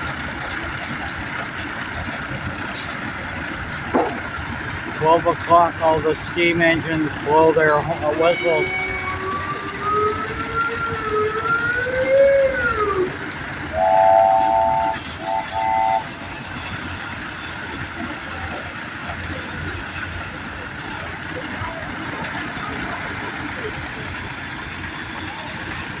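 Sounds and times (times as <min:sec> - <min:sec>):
steam engines running: 0:00.0 - 0:26.0
steam whistle sliding in pitch: 0:08.1 - 0:16.5
steam hiss: 0:13.7 - 0:26.0.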